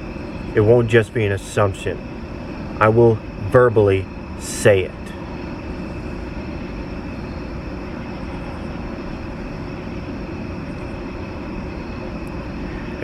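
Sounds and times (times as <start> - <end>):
constant hums: 0.0 - 13.0
steady mechanical drone: 0.0 - 13.0.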